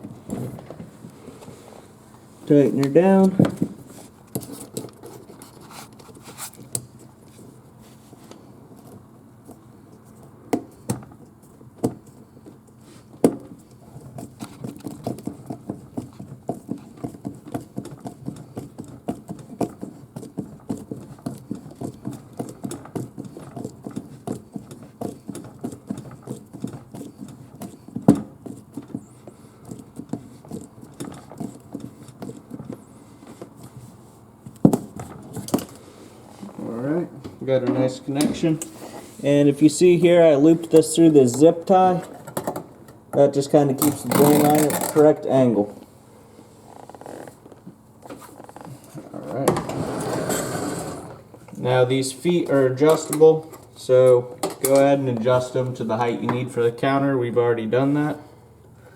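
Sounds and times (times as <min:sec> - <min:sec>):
rapid clicking and rattling: 0:13.9 - 0:32.8, 0:43.8 - 0:45.1.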